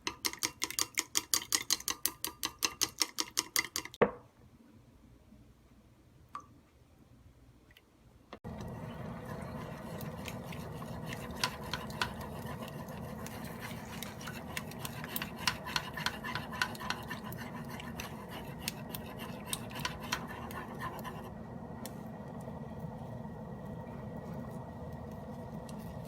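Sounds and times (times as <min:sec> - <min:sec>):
steady low hum: 0:08.4 - 0:26.0
utensils clicking against dishes: 0:10.0 - 0:20.6.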